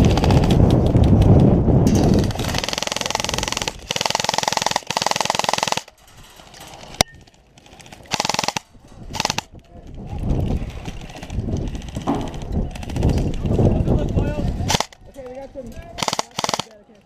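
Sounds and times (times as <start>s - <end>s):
airsoft guns firing full auto: 1.9s - 5.9s, 7.8s - 9.5s, 14.7s - 15.0s, 16.0s - 16.8s.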